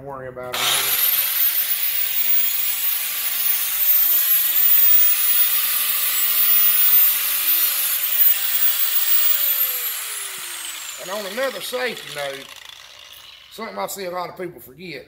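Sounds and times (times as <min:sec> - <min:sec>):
angle grinder grinding steel: 0:00.5 - 0:14.1.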